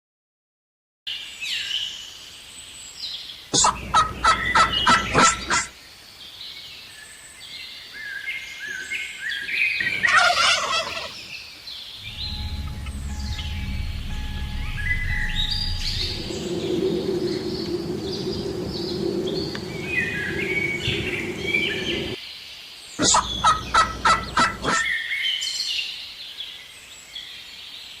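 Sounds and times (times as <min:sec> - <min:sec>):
high bird chirps: 0:03.6 - 0:05.7, 0:23.1 - 0:24.9
turkey gobbling: 0:03.6 - 0:05.7, 0:09.8 - 0:11.2, 0:23.0 - 0:24.9.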